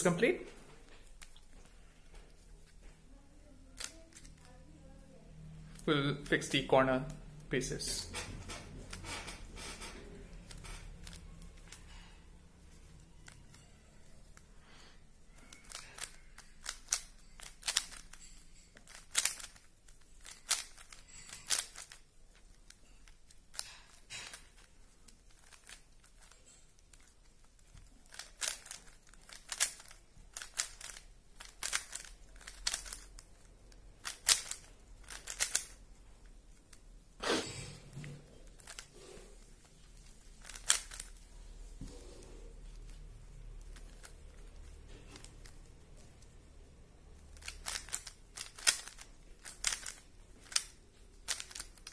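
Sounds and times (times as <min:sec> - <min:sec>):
plastic cube clicking: 0:03.8 - 0:04.5, 0:10.4 - 0:11.8, 0:15.3 - 0:18.2, 0:18.8 - 0:35.8, 0:38.5 - 0:38.9, 0:40.0 - 0:41.2, 0:47.4 - 0:51.9.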